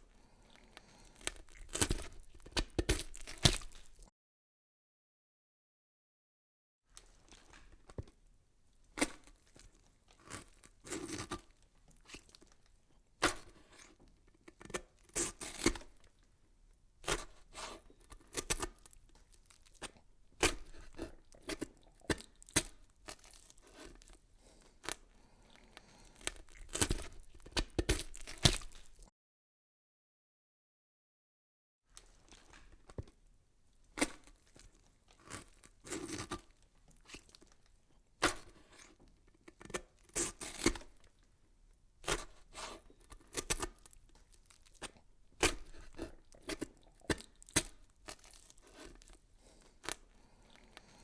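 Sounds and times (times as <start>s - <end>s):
crisp tearing and crackling: 0.8s - 4.1s, 25.8s - 29.1s, 42.1s - 49.2s.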